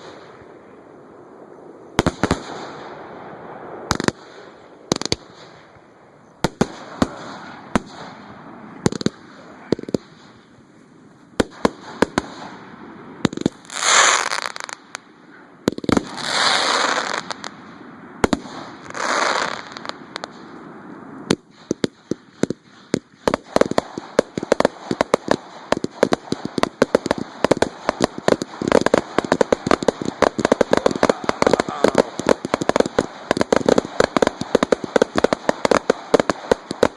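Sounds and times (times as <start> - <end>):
fireworks bangs: 0.0 - 10.6, 11.3 - 36.9
fireworks hissing bursts: 13.2 - 15.0, 15.8 - 17.6, 18.2 - 20.6, 21.3 - 36.9.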